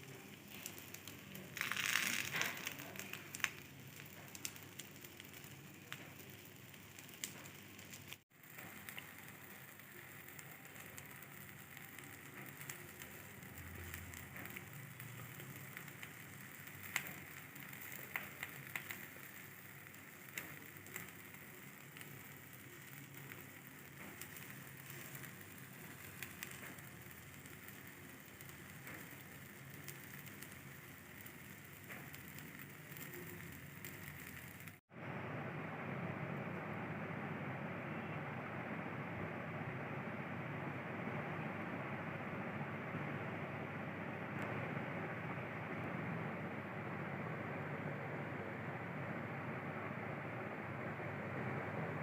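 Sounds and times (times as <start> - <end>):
omelette sizzling in a pan: 0.0 - 34.9.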